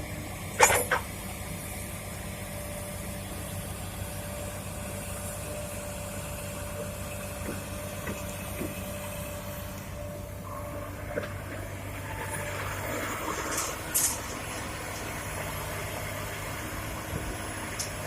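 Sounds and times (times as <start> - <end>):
diesel machinery running: 0.0 - 18.0
sharp metallic clanks: 0.6 - 1.1.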